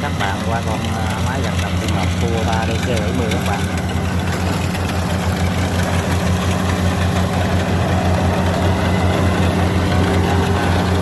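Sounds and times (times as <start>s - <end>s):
diesel engine running steadily: 0.0s - 11.0s.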